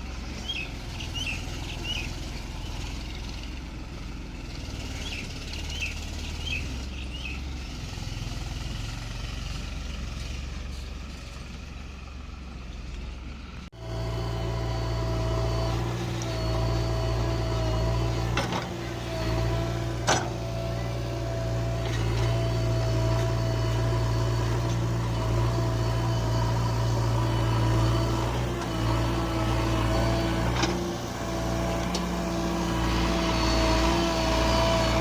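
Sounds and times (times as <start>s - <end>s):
birds chirping: 0.0s - 3.3s, 4.9s - 7.6s
diesel engine running: 0.0s - 35.0s
engine high whine: 0.0s - 35.0s.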